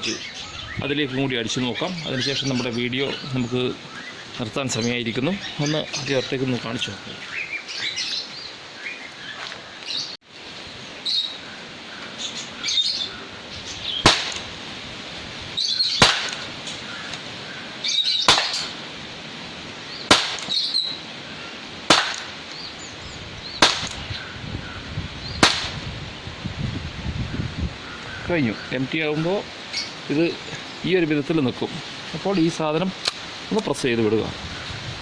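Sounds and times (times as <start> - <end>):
birds chirping: 0.0 - 35.0
pistol shots: 14.0 - 14.5, 16.0 - 16.5, 18.3 - 18.8, 20.1 - 20.6, 21.9 - 22.4, 23.6 - 24.0, 25.4 - 25.8.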